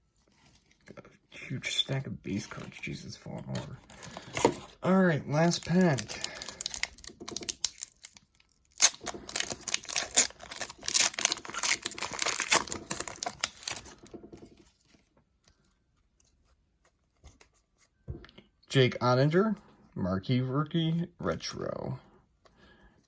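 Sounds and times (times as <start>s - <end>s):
wrapper tearing and crinkling: 5.3s - 14.0s.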